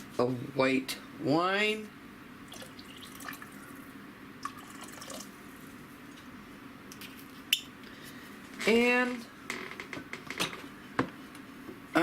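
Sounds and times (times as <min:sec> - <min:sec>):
wine trickling into pot: 0:02.5 - 0:03.8, 0:04.4 - 0:05.4.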